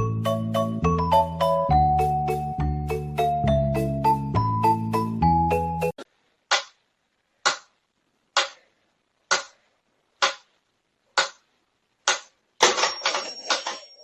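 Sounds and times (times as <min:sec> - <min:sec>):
clattering noise: 0:12.0 - 0:14.0.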